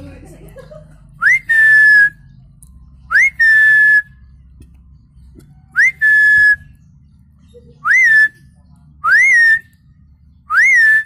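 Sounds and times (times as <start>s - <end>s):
man whistling bird call: 1.2s - 2.2s, 3.1s - 4.1s, 5.8s - 6.7s, 7.8s - 8.4s, 9.0s - 9.7s, 10.5s - 11.0s.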